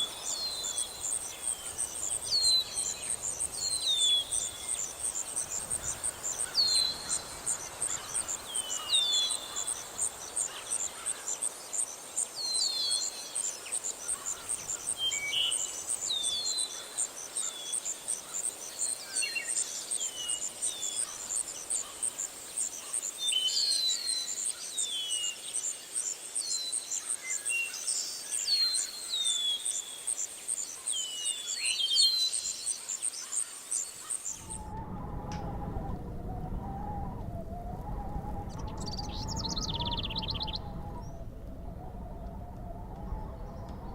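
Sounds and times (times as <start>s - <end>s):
birds chirping: 0.0s - 25.7s, 38.0s - 42.3s
insects trilling: 0.0s - 34.7s.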